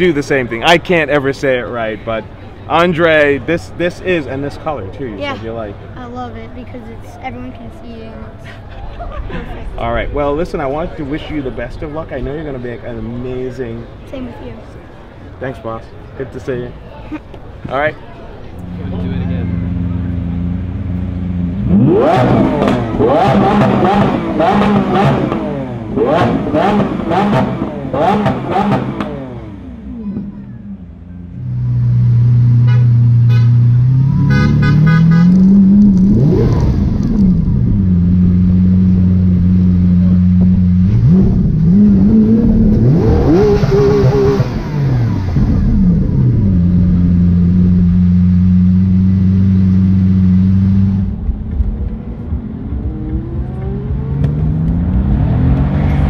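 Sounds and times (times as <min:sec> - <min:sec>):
supercar engine revving: 0:18.5 - 0:56.0.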